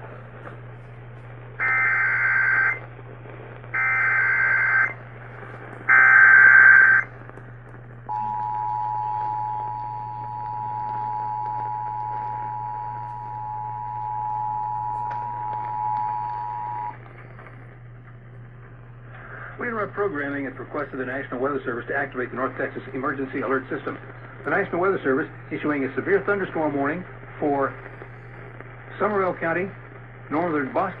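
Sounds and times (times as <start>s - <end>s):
steady dual tone attention signal: 1.6s - 2.8s, 3.7s - 5.0s, 5.9s - 7.2s, 8.1s - 17.4s.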